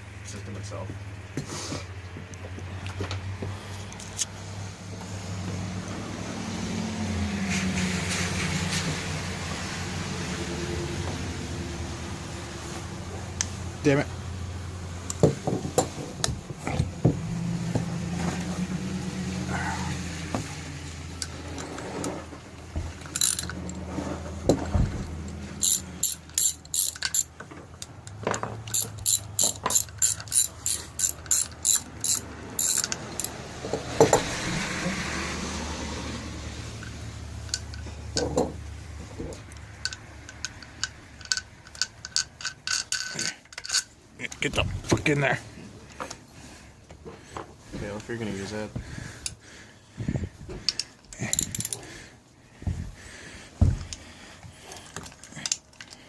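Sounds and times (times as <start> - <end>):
ratchet wrench clicking: 23.0 - 23.6, 25.3 - 33.4, 39.5 - 43.9, 50.7 - 51.9
tools knocking against metal: 25.6 - 27.3, 28.2 - 33.4.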